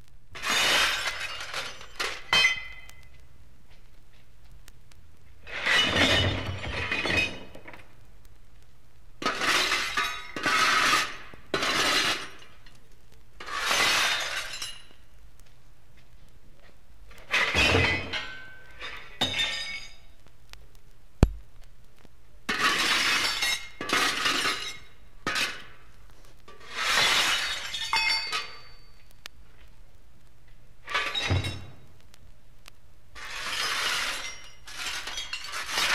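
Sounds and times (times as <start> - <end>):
shovel tossing scrap metal: 0.4 - 2.9
sharp knock: 21.2 - 21.5.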